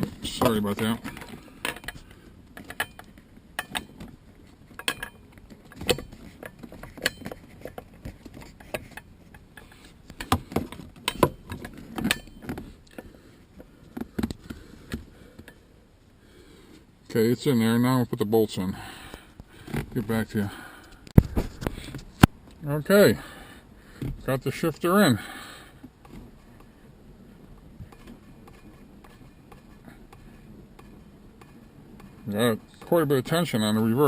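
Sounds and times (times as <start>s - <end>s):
light clicks and knocks of parts: 0.0s - 15.7s.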